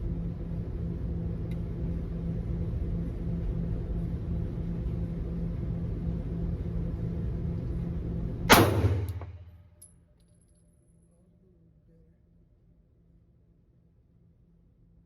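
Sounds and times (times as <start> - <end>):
low rumble: 1.8 - 9.6
pistol shot: 8.5 - 9.6.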